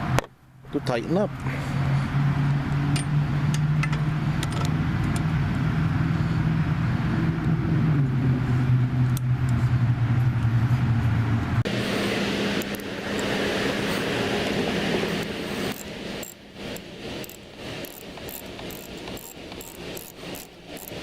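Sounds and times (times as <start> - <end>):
engine droning: 0.0 - 21.0
steady hum with hiss: 11.6 - 21.0.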